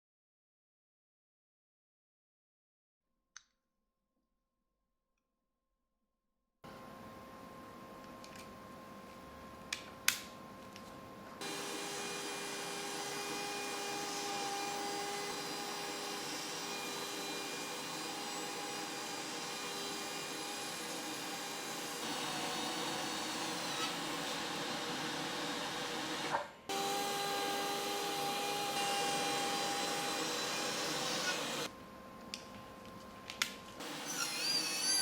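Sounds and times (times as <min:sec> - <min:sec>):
small electric motor humming: 0:11.4 - 0:31.7.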